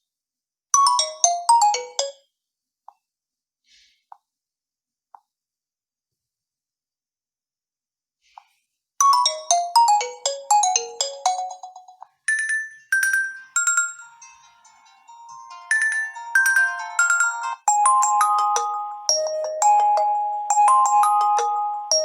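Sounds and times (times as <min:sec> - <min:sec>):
phone ringtone chiming melody: 0:00.8 - 0:02.2, 0:09.0 - 0:22.0.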